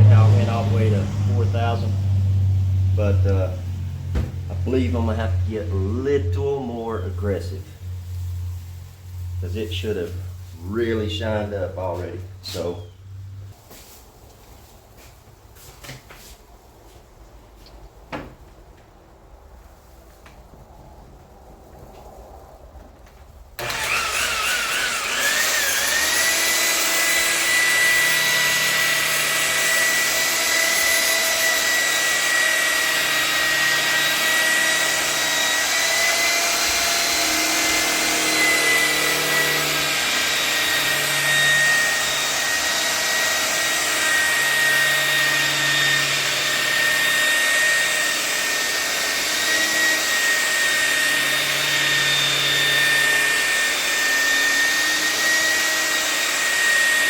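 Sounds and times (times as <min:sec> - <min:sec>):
electric polisher motor whine: 0:23.6 - 0:57.0.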